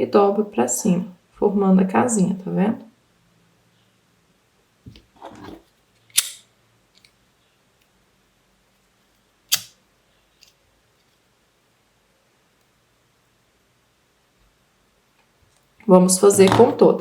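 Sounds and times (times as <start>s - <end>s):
lighter strike click: 9.5s - 9.8s.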